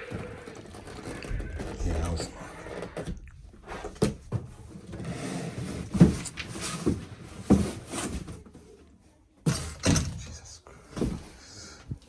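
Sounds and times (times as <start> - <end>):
cardboard scraping and rubbing: 0.0 - 8.5.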